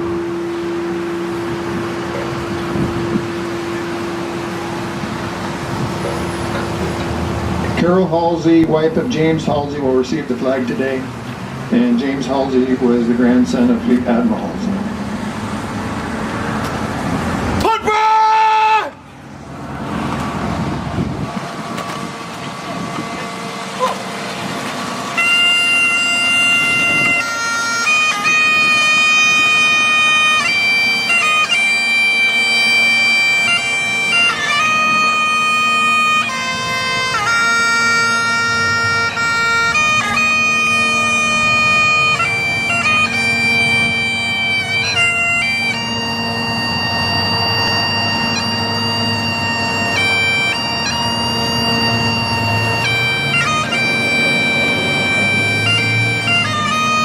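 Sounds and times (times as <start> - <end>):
bagpipe playing slow melody: 0.0 - 17.2, 21.8 - 57.0.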